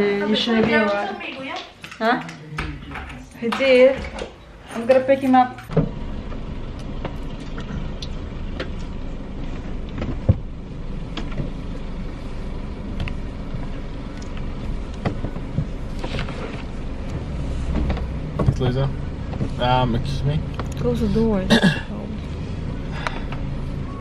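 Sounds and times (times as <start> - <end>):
car engine and road rumble: 4.9 - 24.0.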